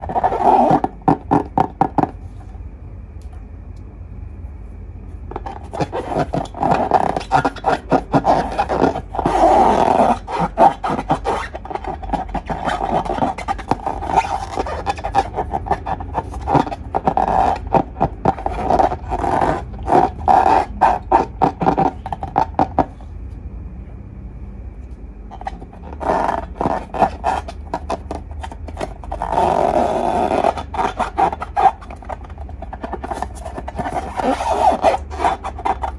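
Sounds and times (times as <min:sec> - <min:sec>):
slime squeezed with sticky crackling: 0:05.4 - 0:23.0.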